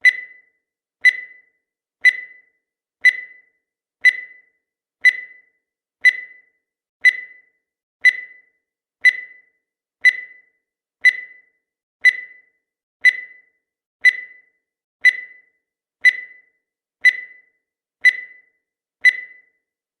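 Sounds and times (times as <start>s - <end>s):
short high beeps: 19.1s - 19.5s.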